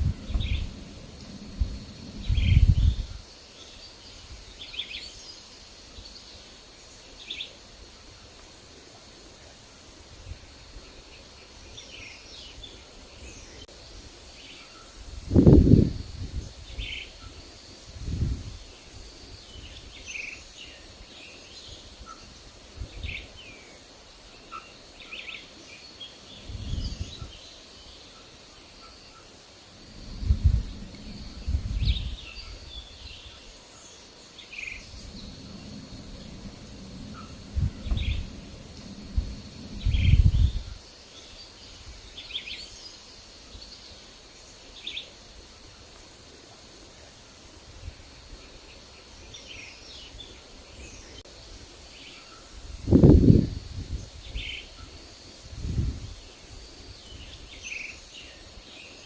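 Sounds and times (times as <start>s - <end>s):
wind gusts on microphone: 0.0s - 3.4s, 15.0s - 20.1s, 21.7s - 23.4s, 26.3s - 27.4s, 29.7s - 33.6s, 34.4s - 42.5s, 52.5s - 57.6s
forest birds chirping: 0.0s - 59.0s.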